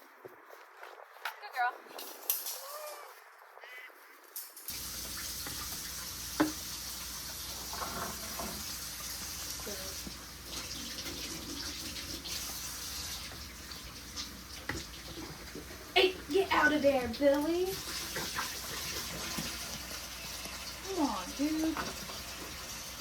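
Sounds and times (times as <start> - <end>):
water running into a container: 4.7 - 23.0.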